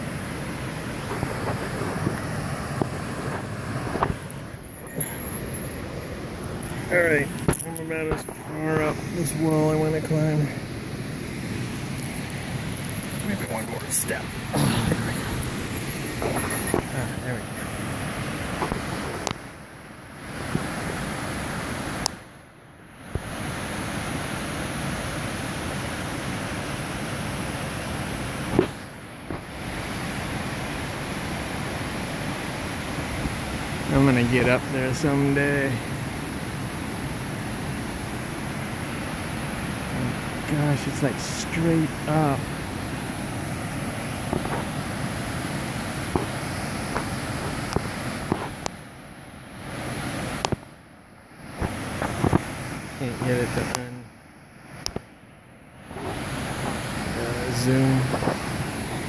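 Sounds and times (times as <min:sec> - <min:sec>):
wind buffeting microphone: 0:00.3 - 0:09.9, 0:10.7 - 0:19.4.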